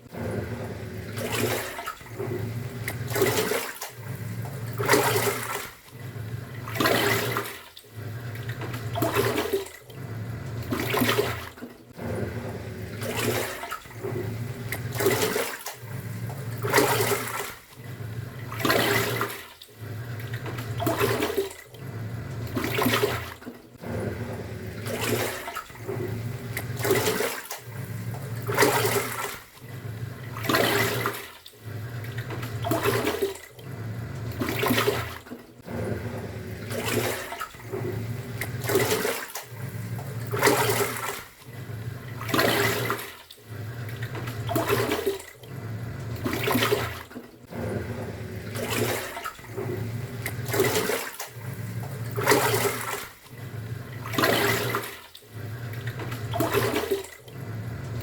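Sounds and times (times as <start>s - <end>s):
washing machine motor humming: 0.0s - 58.0s
water sloshing: 0.0s - 58.0s.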